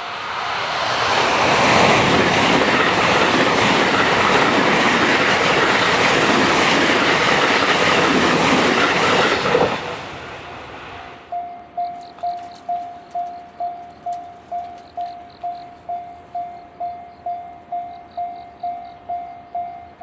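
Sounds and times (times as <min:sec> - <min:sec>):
electric train passing: 0:00.0 - 0:20.0
wheels clattering over rail joints: 0:01.6 - 0:10.3.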